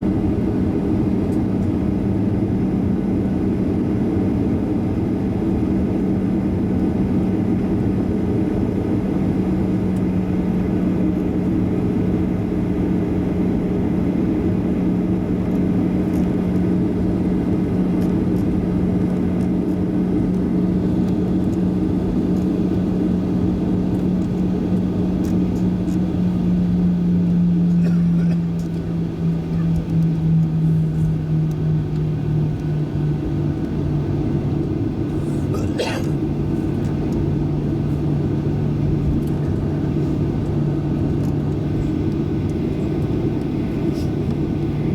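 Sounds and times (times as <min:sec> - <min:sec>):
airliner cabin hum: 0:00.0 - 0:44.9
steady low tone: 0:24.0 - 0:44.9.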